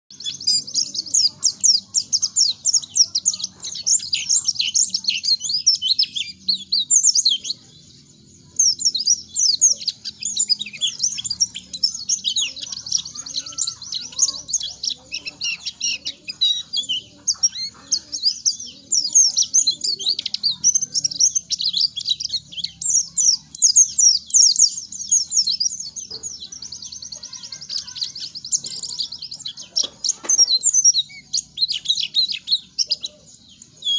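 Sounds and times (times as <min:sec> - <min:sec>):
bird twittering song: 0:00.0 - 0:33.9.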